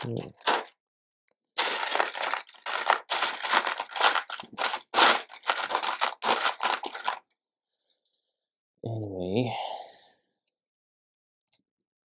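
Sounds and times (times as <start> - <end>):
plastic bricks clattering: 0.0 - 0.7, 1.6 - 7.2.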